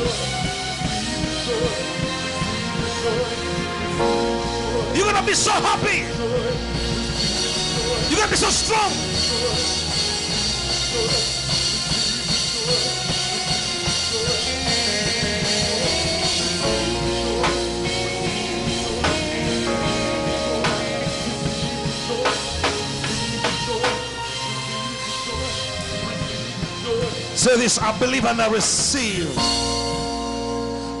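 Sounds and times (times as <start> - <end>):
sustained keyboard chords: 0.0 - 31.0
drum hits: 7.1 - 24.2.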